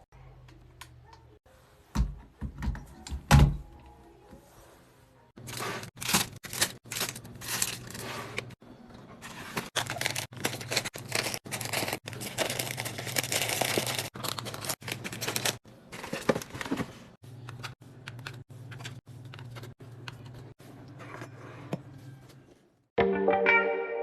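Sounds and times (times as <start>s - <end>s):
plastic packaging crinkling: 5.4s - 8.1s, 9.3s - 16.9s.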